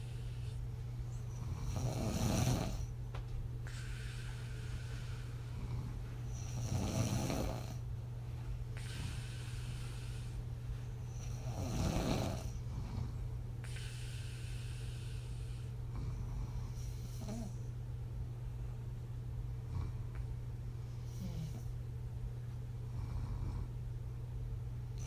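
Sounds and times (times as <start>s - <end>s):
woman snoring: 1.3s - 2.9s, 3.7s - 7.8s, 11.1s - 13.1s, 16.0s - 17.6s, 21.1s - 21.7s.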